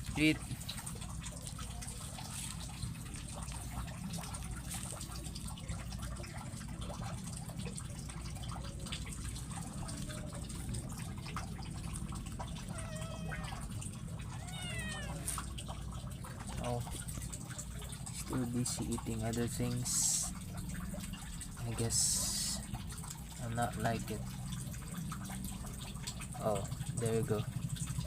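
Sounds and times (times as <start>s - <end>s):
cat chewing and crunching bones: 0.0s - 18.8s
cat meowing: 12.6s - 15.5s.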